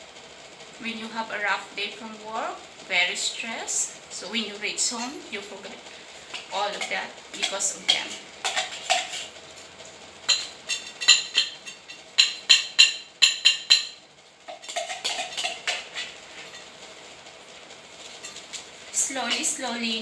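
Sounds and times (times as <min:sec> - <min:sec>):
spoon scraping food: 0:04.9 - 0:09.7, 0:10.3 - 0:16.8, 0:18.0 - 0:20.0
metal spoon clinking on container: 0:10.3 - 0:16.7.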